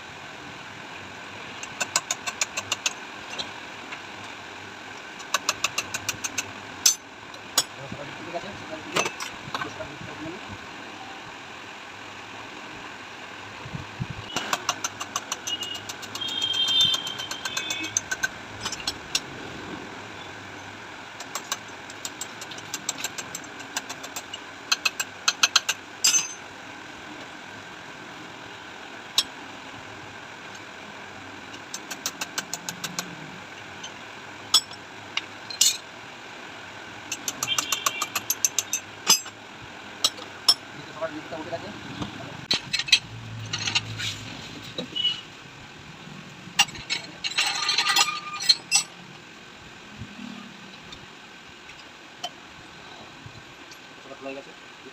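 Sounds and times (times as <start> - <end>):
mechanical hum: 0.0 - 54.9
ratchet clicking: 1.5 - 3.5, 5.2 - 7.0, 14.3 - 19.3, 21.2 - 26.4, 37.1 - 39.4.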